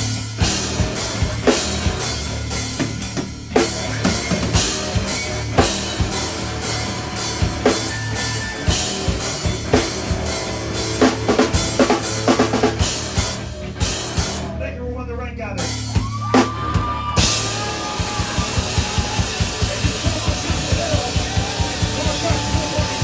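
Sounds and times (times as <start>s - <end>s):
instrumental band playing live: 0.0s - 14.6s, 15.6s - 23.0s
low bass notes: 0.0s - 23.0s
bass drum and snare hits: 15.8s - 23.0s.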